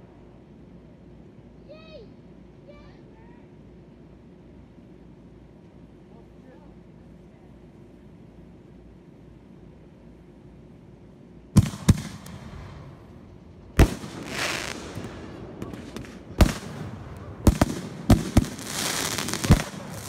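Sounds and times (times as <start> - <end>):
fireworks bangs: 11.6 - 20.0
fireworks hissing: 11.6 - 20.0.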